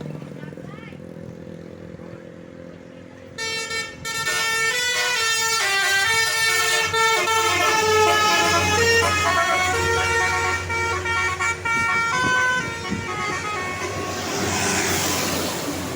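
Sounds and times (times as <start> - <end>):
multi-tone bus air horn tune: 3.3 - 15.7.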